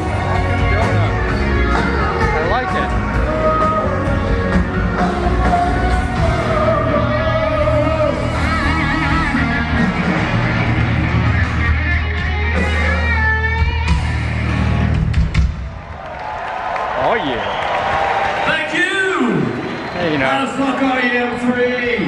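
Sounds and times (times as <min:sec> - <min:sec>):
electric guitar with vibrato: 0:00.0 - 0:15.1
live hard rock band: 0:00.0 - 0:15.6.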